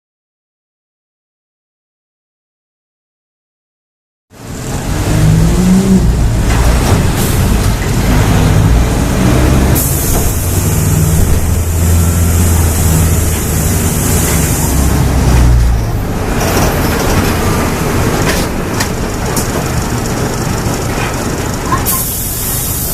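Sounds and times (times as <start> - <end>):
bus diesel engine revving: 4.4 - 22.9
hiss: 21.8 - 22.9.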